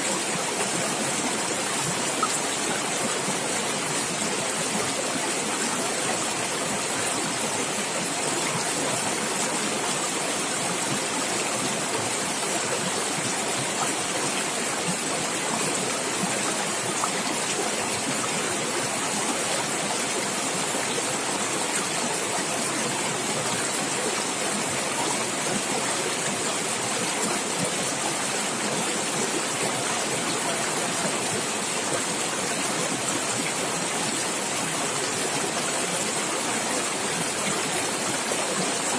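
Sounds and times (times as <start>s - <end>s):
stream gurgling over rocks: 0.0s - 38.9s.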